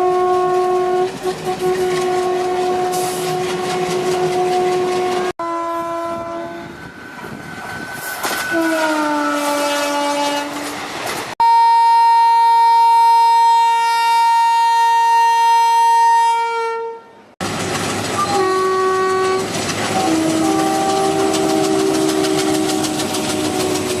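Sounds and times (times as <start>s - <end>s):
multi-note train horn: 0.0s - 6.8s, 8.4s - 10.8s, 11.4s - 17.3s, 18.2s - 24.0s
single-pitch train horn blast: 0.0s - 6.8s, 8.4s - 10.8s, 11.4s - 17.3s, 18.2s - 24.0s
train wheels clicking on rail joints: 0.4s - 5.3s, 6.9s - 11.4s, 17.4s - 24.0s.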